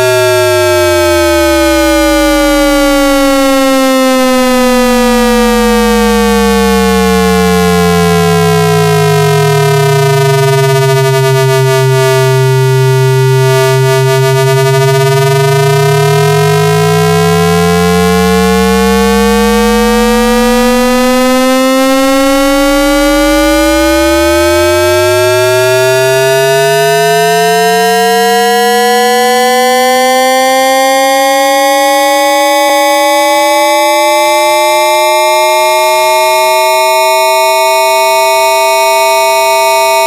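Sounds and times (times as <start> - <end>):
low sinking whistle: 0.0 - 40.0
radio whistling tones gliding upward: 18.4 - 27.4.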